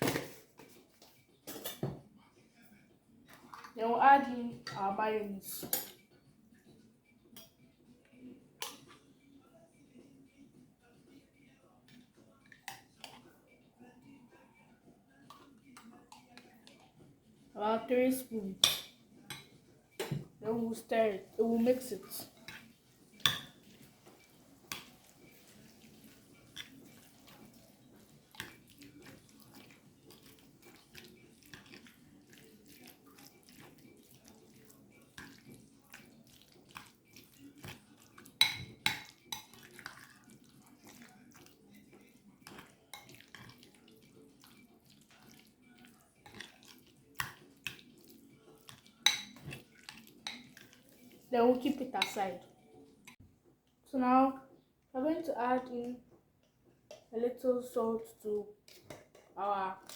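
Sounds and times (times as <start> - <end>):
spoon scraping bowl: 20.6 - 52.7.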